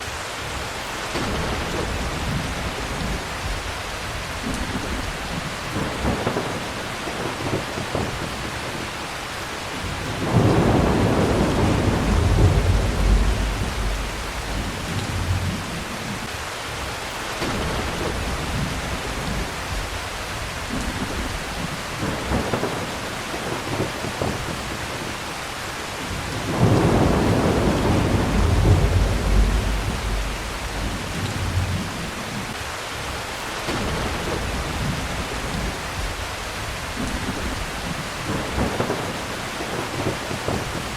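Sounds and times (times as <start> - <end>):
heavy rain: 0.0 - 40.9
thunder rumbling: 0.5 - 25.2, 25.9 - 32.6, 33.7 - 40.9.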